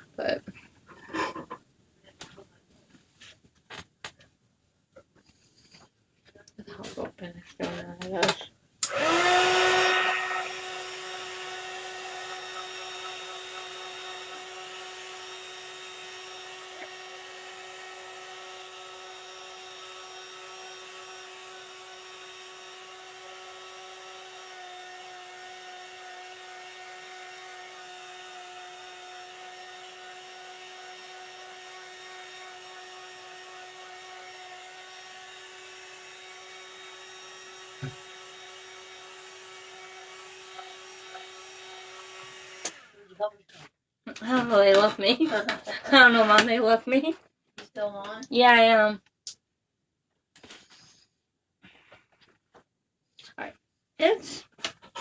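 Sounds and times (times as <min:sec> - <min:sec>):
heat gun motor whine: 0:08.2 - 0:43.0.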